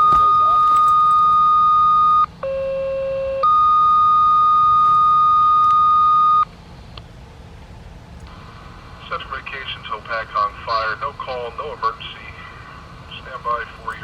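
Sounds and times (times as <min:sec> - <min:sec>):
radio paging tones: 0:00.0 - 0:06.5
faint radio hiss: 0:08.2 - 0:14.0.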